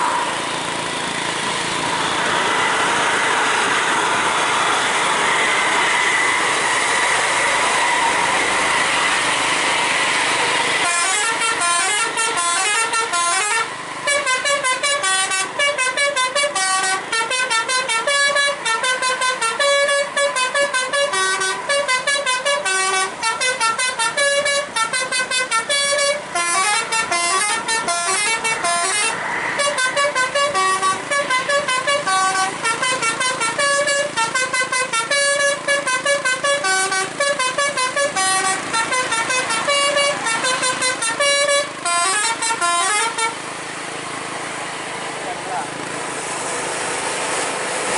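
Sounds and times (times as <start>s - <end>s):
road noise: 0.0s - 47.9s
musical air horn playing a tune: 10.8s - 43.4s.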